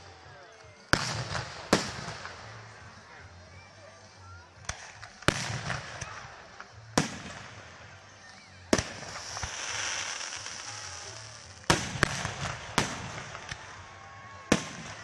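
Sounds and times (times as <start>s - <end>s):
high firework hiss: 0.0s - 15.0s
fireworks bangs: 0.8s - 3.1s, 4.6s - 7.9s, 8.7s - 15.0s.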